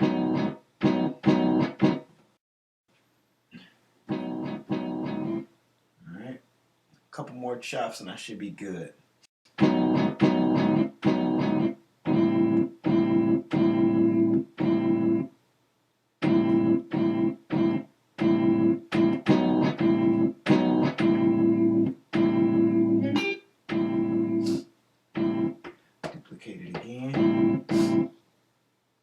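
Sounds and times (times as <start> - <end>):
plucked guitar chord chops: 0.0 - 2.0, 4.1 - 5.4, 9.6 - 15.2, 16.2 - 24.6, 25.2 - 25.6, 27.1 - 28.1.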